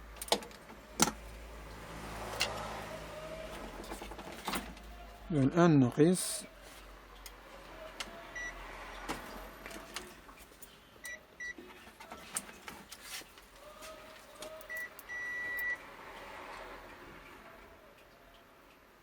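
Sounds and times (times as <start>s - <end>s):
multimeter beeping: 14.7s - 15.8s.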